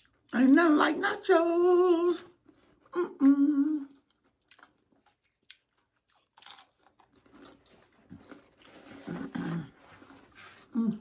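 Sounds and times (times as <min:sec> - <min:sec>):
close-up chewing: 0:04.0 - 0:11.0
tortilla chips crunching: 0:04.2 - 0:09.2.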